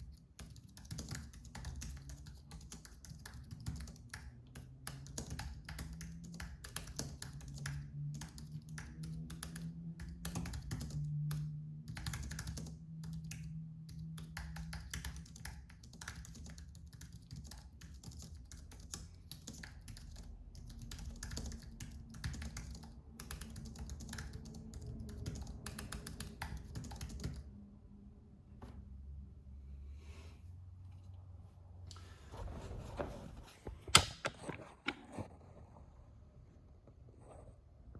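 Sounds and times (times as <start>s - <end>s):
keyboard typing clicks: 0.0s - 27.5s.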